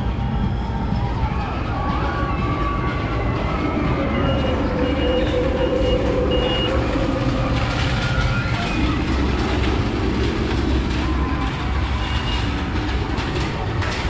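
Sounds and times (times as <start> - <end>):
machinery noise with low hum: 0.0 - 14.0
electronic warning beeps: 4.2 - 6.9.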